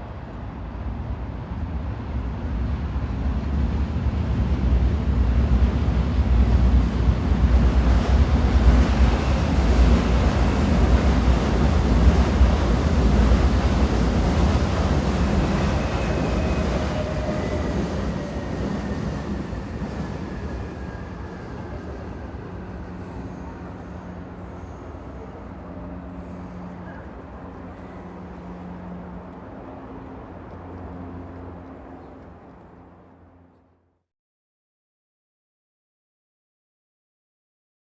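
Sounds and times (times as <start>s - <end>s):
train rumbling along rails: 0.0s - 33.9s
faint falling squeal: 15.5s - 28.8s.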